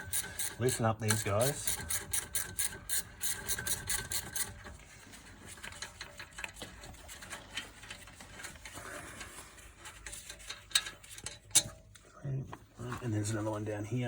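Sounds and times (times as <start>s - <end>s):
hand tools ticking and rattling: 0.0s - 4.8s, 5.4s - 11.8s.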